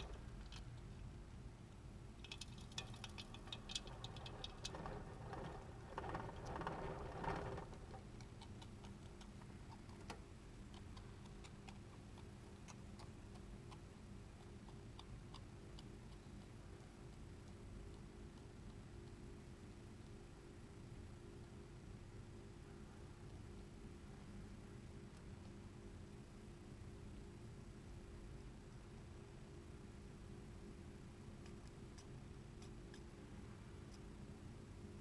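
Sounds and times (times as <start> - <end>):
hamster clicking: 0.0 - 1.4, 2.2 - 22.5, 31.2 - 34.4.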